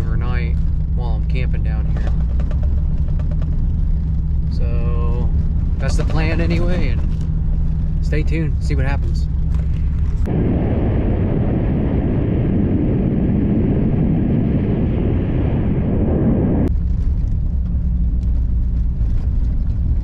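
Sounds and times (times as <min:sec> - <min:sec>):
tyre and road noise: 0:00.0 - 0:20.0
vehicle engine humming: 0:00.0 - 0:20.0.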